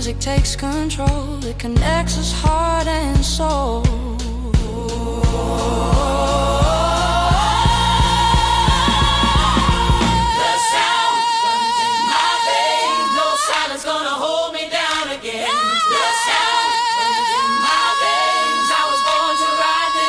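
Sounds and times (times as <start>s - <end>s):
drums and bass: 0.0s - 10.4s
soul singer holding notes: 0.0s - 13.8s
choir harmonies: 4.6s - 20.0s.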